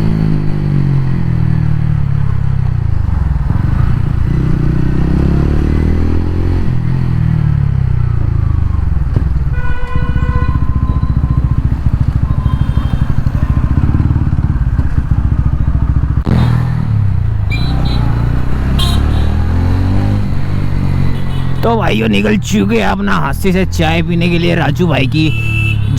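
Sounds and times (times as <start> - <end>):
motorcycle engine revving: 0.0 - 22.7
horn-like tone: 9.5 - 14.4, 17.5 - 19.5, 25.2 - 25.9.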